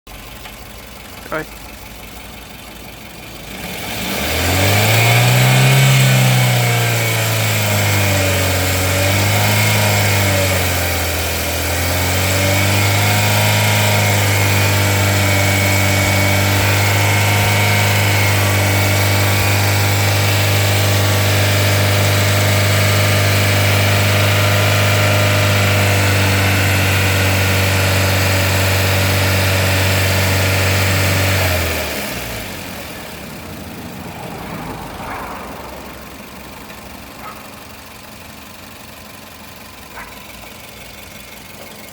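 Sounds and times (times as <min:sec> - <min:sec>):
car engine revving: 0:00.3 - 0:41.9.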